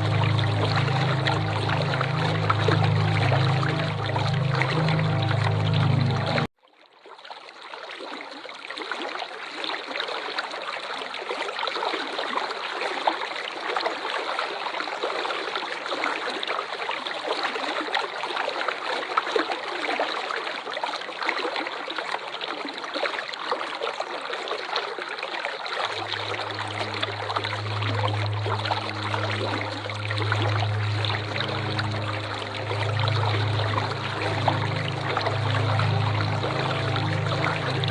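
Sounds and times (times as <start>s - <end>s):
low steady hum: 0.0s - 6.5s, 25.9s - 37.9s
waterfall rushing: 0.0s - 6.5s, 25.9s - 37.9s.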